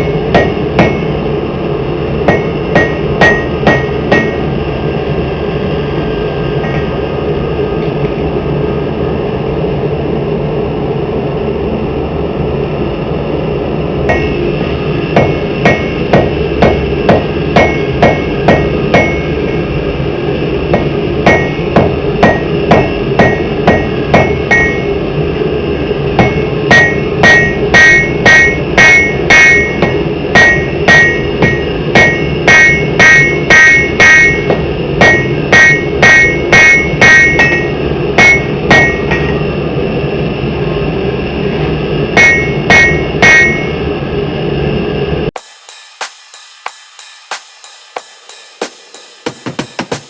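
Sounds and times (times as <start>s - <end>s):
hammer striking hot steel on anvil: 0.0s - 1.3s, 2.2s - 4.6s, 6.6s - 7.0s, 14.1s - 19.9s, 20.6s - 25.0s, 26.2s - 39.5s, 42.1s - 43.8s, 45.4s - 50.0s
steady rushing noise: 0.0s - 50.0s.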